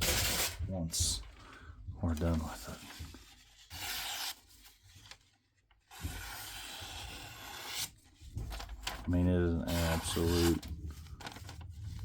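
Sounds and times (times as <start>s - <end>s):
knife slicing through paper: 3.5s - 4.5s, 9.7s - 10.7s.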